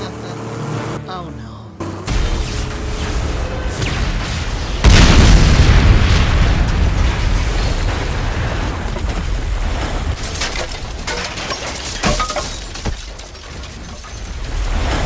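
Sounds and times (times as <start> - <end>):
glass breaking: 10.0 - 15.0.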